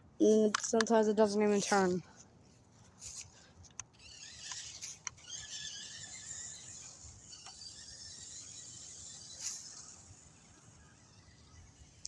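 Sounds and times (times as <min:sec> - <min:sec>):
toy motor high-pitched whine: 0:03.0 - 0:12.0.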